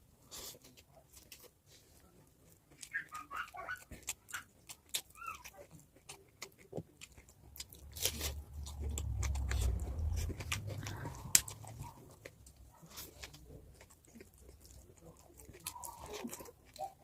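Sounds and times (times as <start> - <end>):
chewing with wet mouth clicks: 2.4 - 17.0
low rumble: 7.8 - 12.2.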